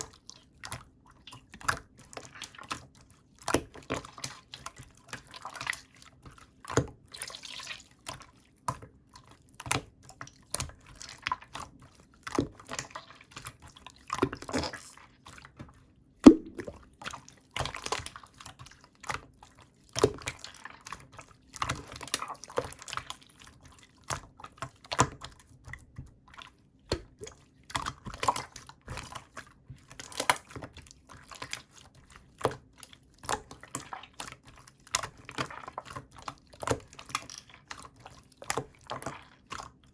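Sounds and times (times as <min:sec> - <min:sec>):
slime squelching and popping: 0:16.2 - 0:19.4.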